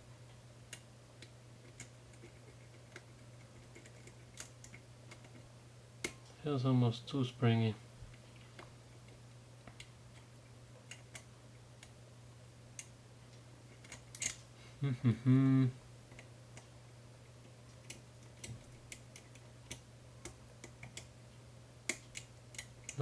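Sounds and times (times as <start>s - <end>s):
person humming: 14.8s - 15.8s.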